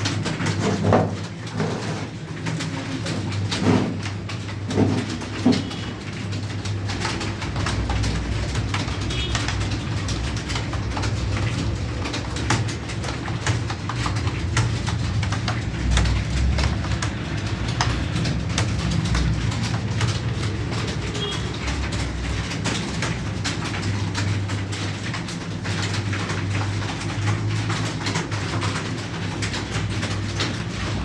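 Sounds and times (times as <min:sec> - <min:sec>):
keyboard typing: 0:02.1 - 0:31.0.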